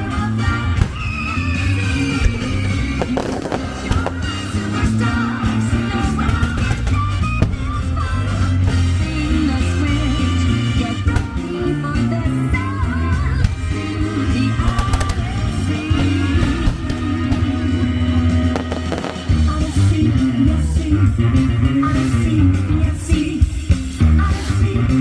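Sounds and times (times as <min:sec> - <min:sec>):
pop-rock song: 0:00.0 - 0:25.0
sharp cracks: 0:00.7 - 0:20.0.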